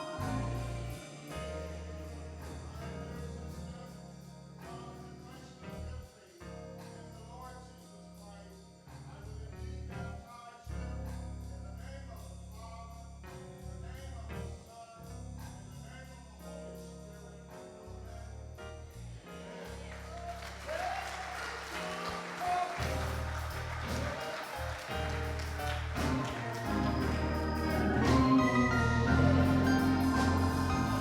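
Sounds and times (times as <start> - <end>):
gospel choir with band: 0.0 - 7.9, 19.2 - 31.0.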